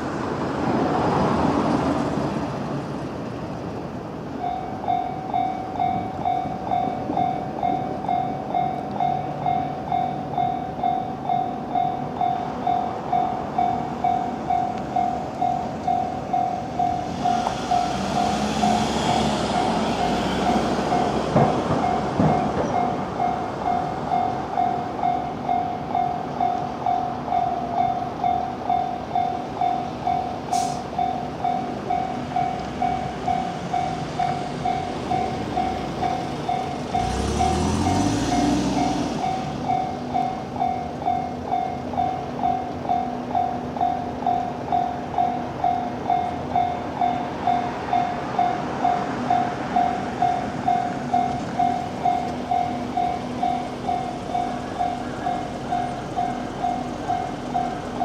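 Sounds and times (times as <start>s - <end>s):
train noise: 0.0s - 58.0s
level-crossing warning bell: 4.0s - 58.0s.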